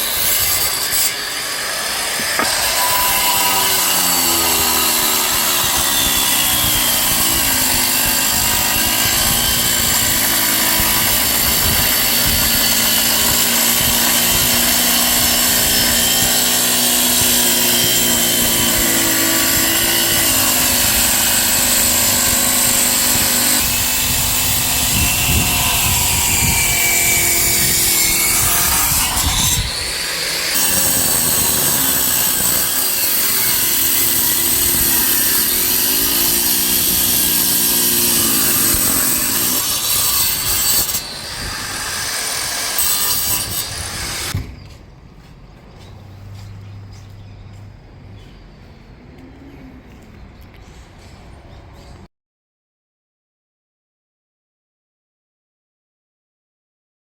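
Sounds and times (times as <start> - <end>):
power tool grinding stone: 0.0 - 44.4.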